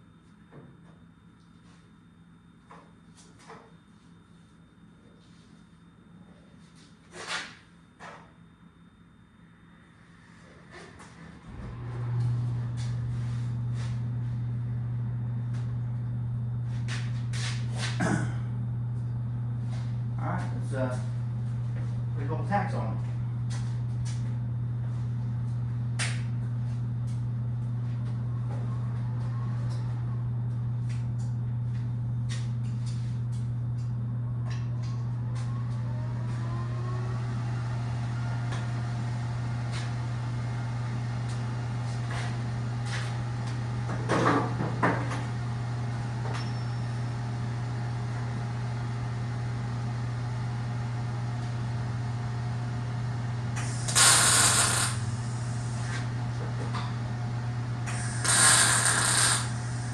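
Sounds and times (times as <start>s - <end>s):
steady low hum: 0.0s - 59.9s
crackling weld bursts: 53.6s - 56.0s, 57.9s - 59.9s.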